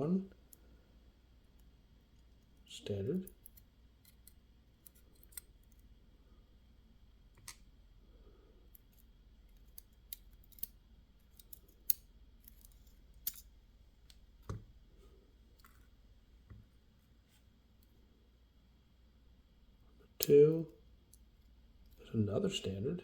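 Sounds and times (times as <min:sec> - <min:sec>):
metallic clicks of lock parts: 0:03.2 - 0:05.9, 0:08.7 - 0:13.5.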